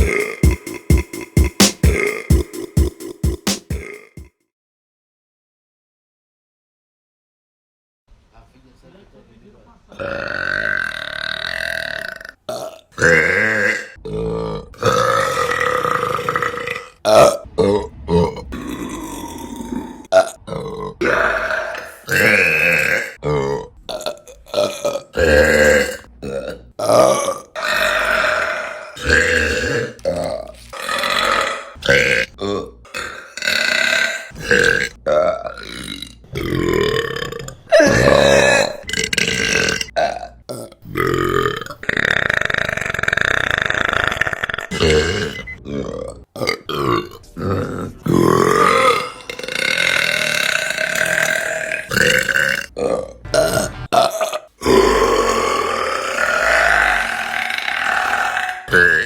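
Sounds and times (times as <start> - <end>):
women burping: 24.6 - 34.9, 36.5 - 39.9, 41.8 - 46.6, 54.0 - 59.0.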